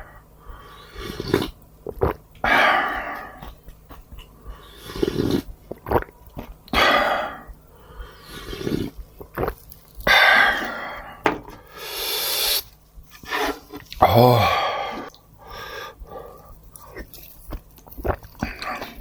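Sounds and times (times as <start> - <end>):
slurping noodles: 0.8 - 3.4, 4.7 - 6.1, 8.2 - 9.6
chewing: 0.9 - 10.1, 13.2 - 14.1, 16.2 - 19.0.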